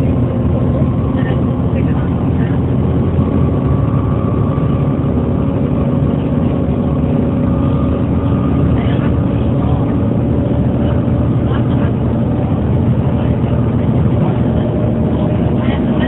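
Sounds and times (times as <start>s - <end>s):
bus diesel engine drone: 0.0s - 16.0s.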